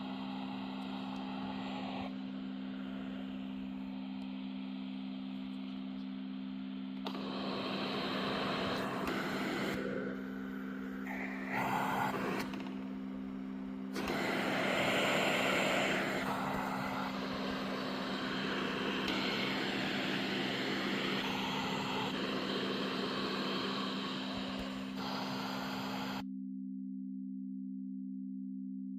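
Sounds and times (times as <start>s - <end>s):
blower rushing air: 0.0s - 5.7s, 7.0s - 26.2s
steady low hum: 0.0s - 26.2s.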